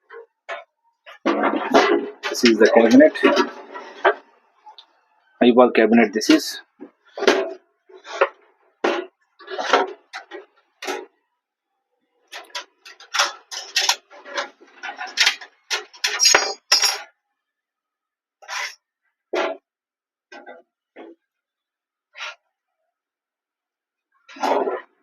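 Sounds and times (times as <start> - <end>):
metal clinks and clatter: 14.9 - 17.1.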